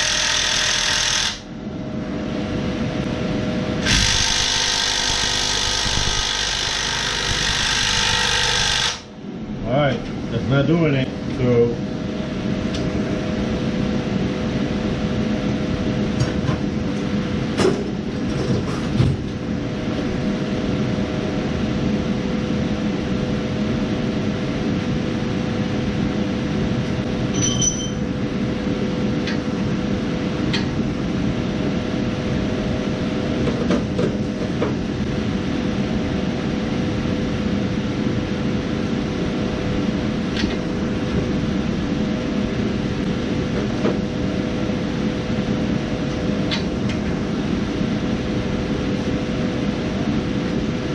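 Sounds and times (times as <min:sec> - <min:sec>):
electric motor humming: 0:00.0 - 0:01.5, 0:03.8 - 0:09.1.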